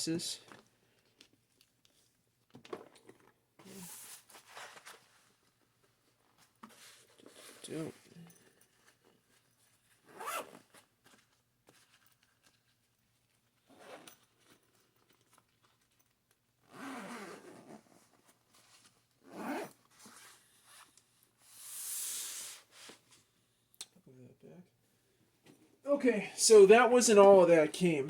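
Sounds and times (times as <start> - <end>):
zipper being pulled shut: 10.0 - 11.2, 13.6 - 14.8, 16.6 - 18.3, 19.2 - 20.9.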